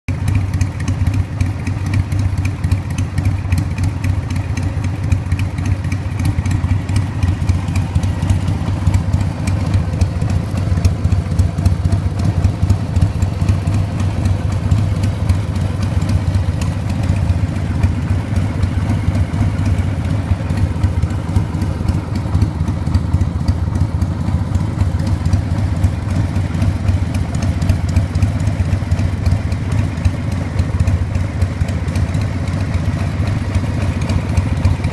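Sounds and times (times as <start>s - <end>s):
motorcycle engine idling: 0.1s - 34.9s.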